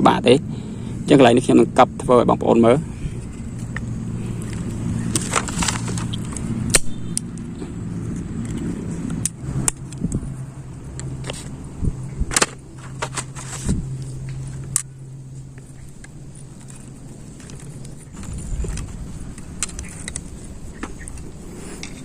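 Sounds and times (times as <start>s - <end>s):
steady low hum: 0.0s - 22.0s
small hard parts clicking: 15.5s - 22.0s.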